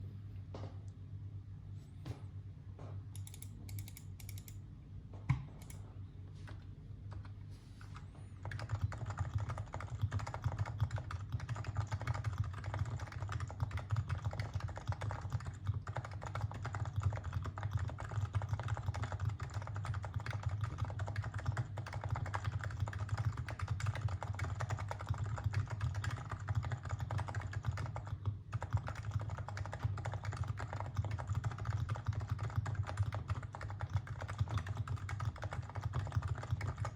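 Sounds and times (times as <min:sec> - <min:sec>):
keyboard typing: 0:08.0 - 0:36.9.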